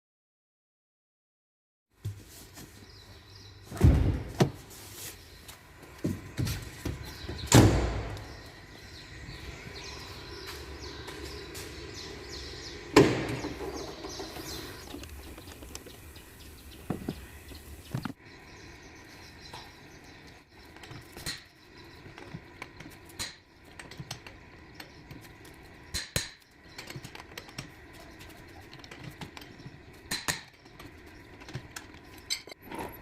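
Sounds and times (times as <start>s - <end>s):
sharp knocks and clunks: 12.9s - 15.8s, 16.8s - 17.3s.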